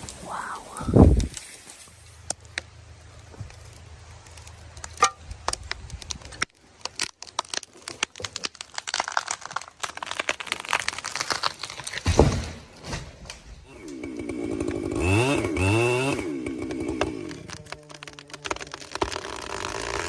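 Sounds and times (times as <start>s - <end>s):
sharp cracks and crackles: 3.4s - 14.0s, 16.6s - 20.0s.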